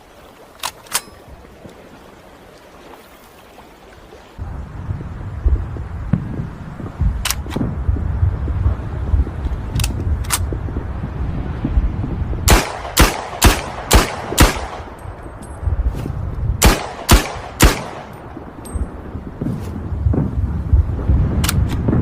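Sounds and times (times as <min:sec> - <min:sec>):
steady low rumble: 0:04.4 - 0:22.0
pistol shots: 0:12.5 - 0:14.9, 0:16.6 - 0:18.1.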